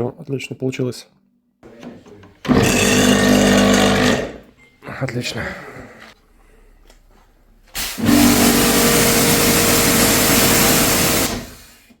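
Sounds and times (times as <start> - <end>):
pressure washer running: 7.8 - 11.8.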